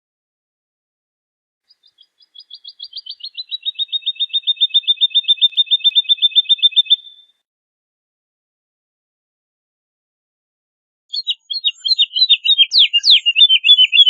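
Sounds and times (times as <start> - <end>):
woodlark singing: 1.7 - 7.4, 11.1 - 14.0.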